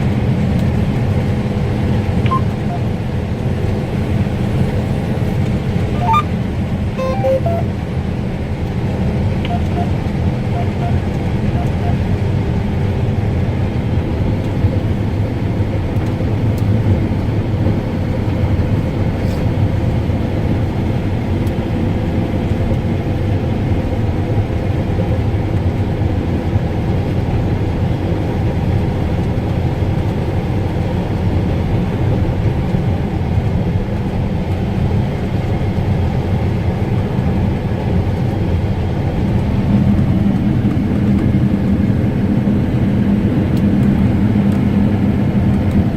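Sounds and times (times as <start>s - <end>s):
combine harvester drone: 0.0s - 45.9s.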